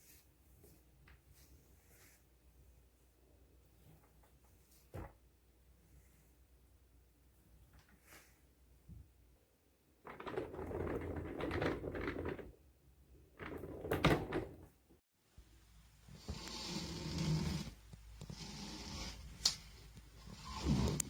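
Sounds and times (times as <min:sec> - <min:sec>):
objects shifted and rubbed: 0:10.0 - 0:12.5, 0:16.1 - 0:21.0.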